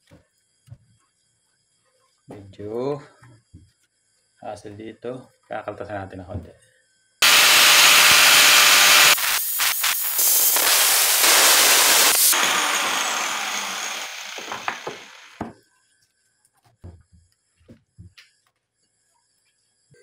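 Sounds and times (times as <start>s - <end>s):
angle grinder cutting metal: 7.2s - 15.4s
grinder disc winding down: 7.2s - 15.4s.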